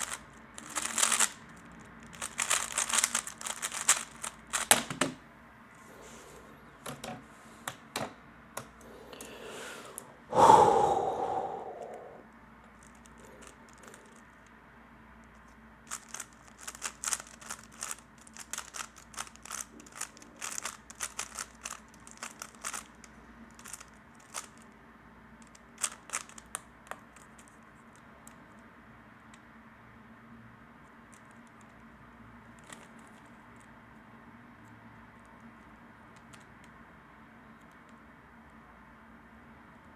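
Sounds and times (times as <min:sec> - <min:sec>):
puzzle cube plastic clicking: 0:00.0 - 0:05.2, 0:12.8 - 0:14.4, 0:15.9 - 0:24.6, 0:25.4 - 0:27.5.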